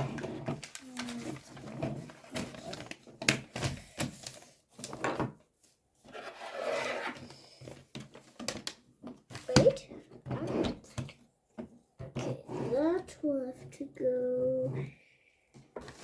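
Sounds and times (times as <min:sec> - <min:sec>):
plastic rubbing: 0:00.0 - 0:05.2.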